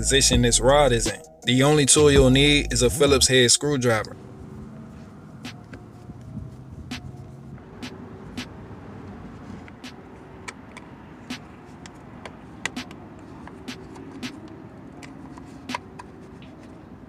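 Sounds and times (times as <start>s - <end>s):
screwdriver clicks and taps: 9.6s - 16.8s.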